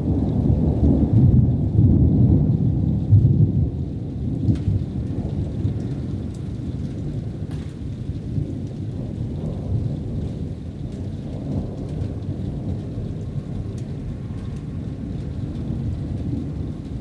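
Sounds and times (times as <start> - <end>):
rolling thunder rumbling: 0.0 - 17.0
faint rain ticks: 0.1 - 17.0.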